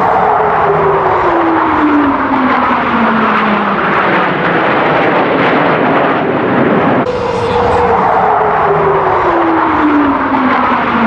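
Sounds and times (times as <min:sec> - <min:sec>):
jet aircraft roaring past: 0:00.0 - 0:11.0.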